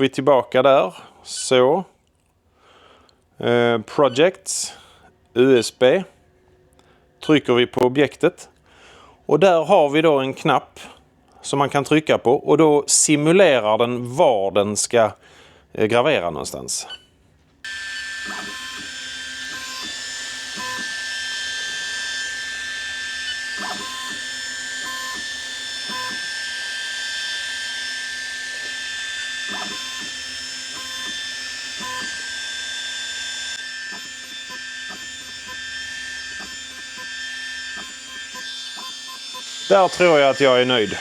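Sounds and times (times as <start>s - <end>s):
laser engraver motors whirring: 16.9s - 41.0s.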